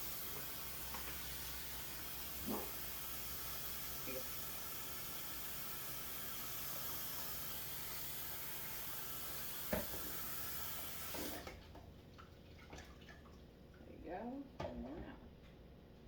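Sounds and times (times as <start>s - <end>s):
water running from a tap: 0.0s - 11.6s.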